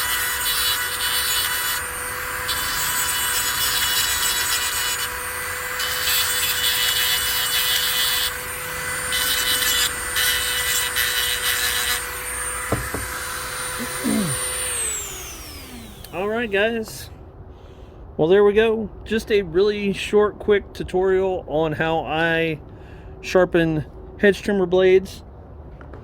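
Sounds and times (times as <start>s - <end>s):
rotary tool whining: 7.8s - 17.0s.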